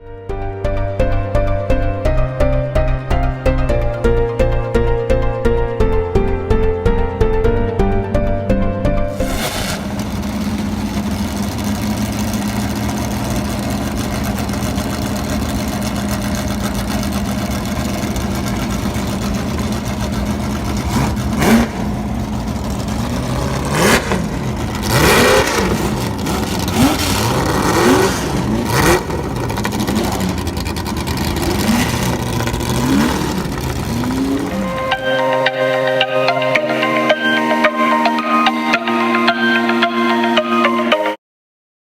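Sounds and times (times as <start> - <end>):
car engine idling and revving: 0.0 - 41.1
sharp exhaust cracks: 9.1 - 35.4.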